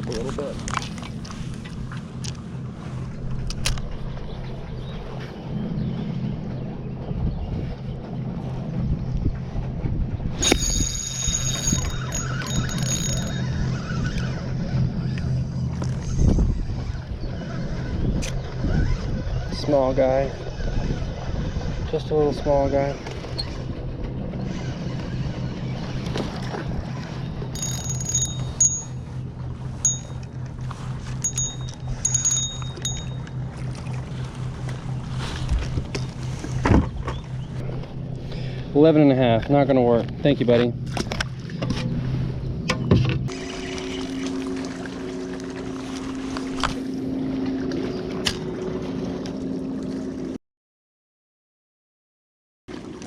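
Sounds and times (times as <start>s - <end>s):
pulsing low mechanical hum: 0.0s - 50.4s
water: 0.0s - 50.4s, 52.7s - 53.0s
wind noise: 15.8s - 19.8s
chiming background music: 31.2s - 33.3s.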